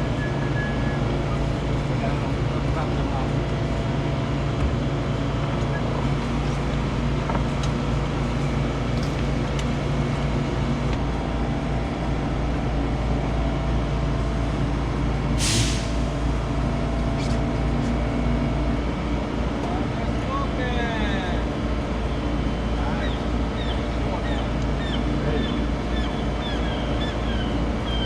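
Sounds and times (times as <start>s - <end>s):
boat engine droning: 0.0s - 15.4s, 16.1s - 28.0s
short hiss: 15.4s - 16.1s.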